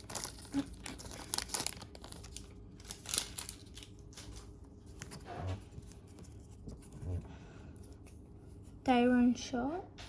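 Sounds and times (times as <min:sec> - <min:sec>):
wrapper crinkling: 0:00.0 - 0:05.2.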